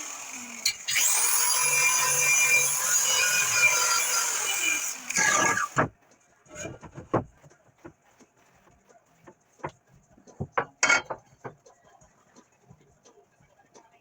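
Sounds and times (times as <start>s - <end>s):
steel parts clanking: 10.8s - 11.2s.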